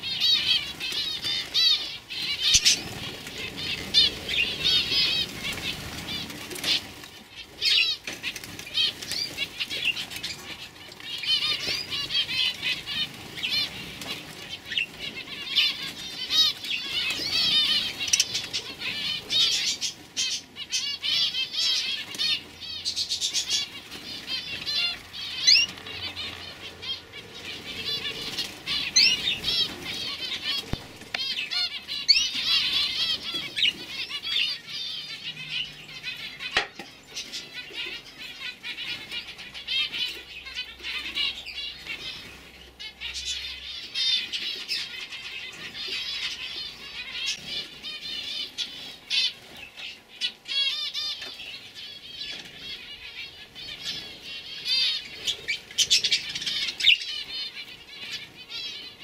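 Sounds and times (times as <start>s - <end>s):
canaries twittering and trilling: 0.0s - 59.0s.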